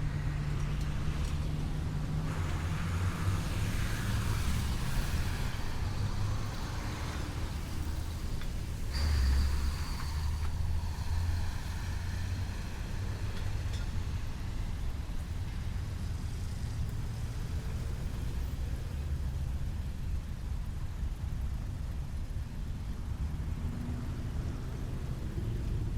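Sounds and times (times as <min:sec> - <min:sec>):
vehicle passing with high whine: 0:00.0 - 0:20.2
traffic rumble: 0:00.0 - 0:25.9.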